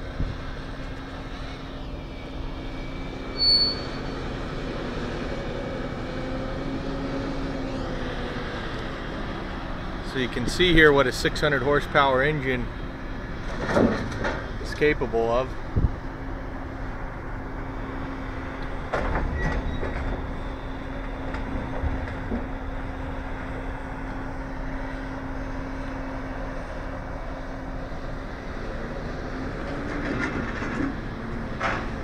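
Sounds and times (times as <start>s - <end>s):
diesel truck engine under load: 0.0s - 32.0s
train wheels rumbling on track: 8.6s - 32.0s.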